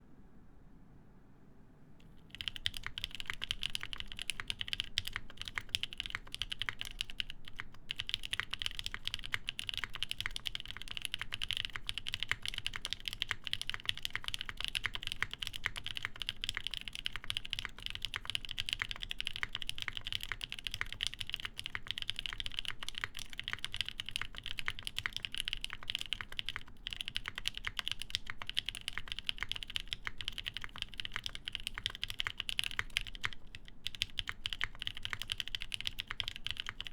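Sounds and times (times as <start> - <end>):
mechanical keyboard typing: 2.2 - 36.9.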